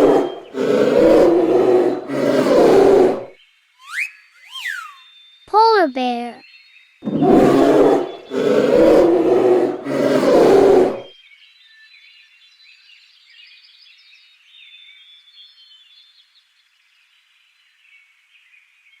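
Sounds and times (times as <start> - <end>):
polar bear roaring: 0.0 - 3.3, 7.0 - 11.1
faint bird chirps and trills: 0.0 - 19.0.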